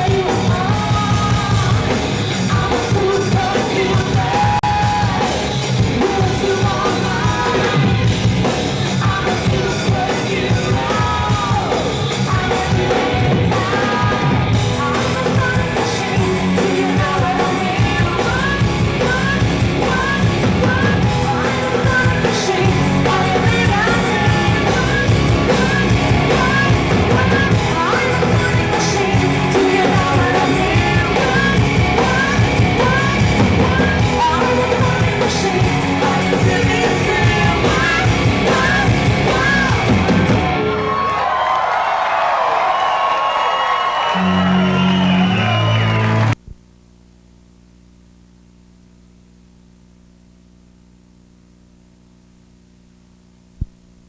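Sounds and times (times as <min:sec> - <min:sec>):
loud rock music with singer: 0:00.0 - 0:41.5.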